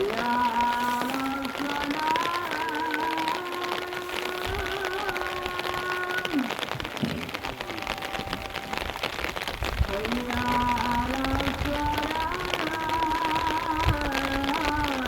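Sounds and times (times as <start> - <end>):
rain falling: 0.0 - 15.0.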